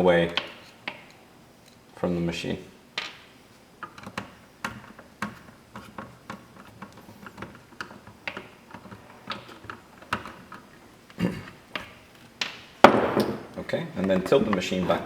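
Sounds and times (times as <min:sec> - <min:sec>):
loose parts knocking: 0:11.7 - 0:15.0.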